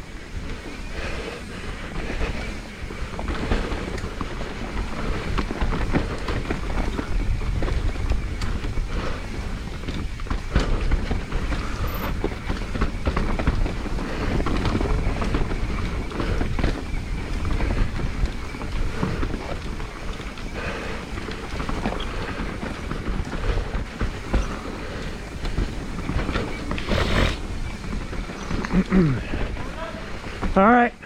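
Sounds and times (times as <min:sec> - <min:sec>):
bike rattling and knocking: 0:00.0 - 0:31.0
wind buffeting microphone: 0:00.0 - 0:31.0
tyres rumbling over dirt and rocks: 0:00.2 - 0:30.8.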